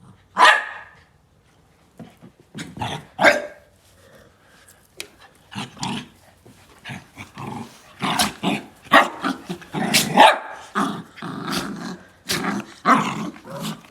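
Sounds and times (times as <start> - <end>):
dog growling and barking: 2.6 - 3.6, 5.5 - 6.2, 6.8 - 13.9.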